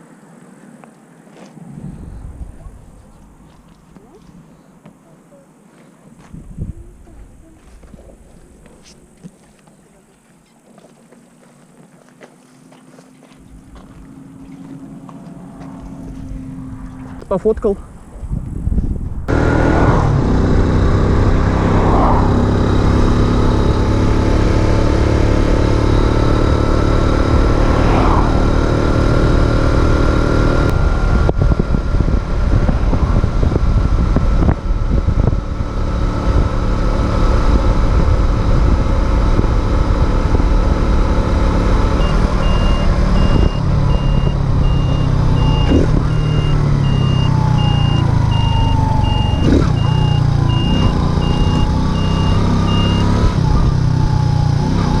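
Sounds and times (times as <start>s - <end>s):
wind on microphone: 1.5s - 4.5s, 6.2s - 9.1s, 15.9s - 24.7s, 30.6s - 52.0s
moped engine running: 19.3s - 55.0s
evenly spaced beeping: 42.0s - 53.2s.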